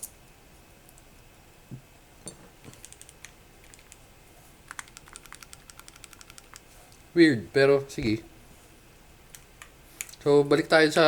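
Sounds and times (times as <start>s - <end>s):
mechanical keyboard keystrokes: 2.7s - 4.0s, 4.7s - 6.6s.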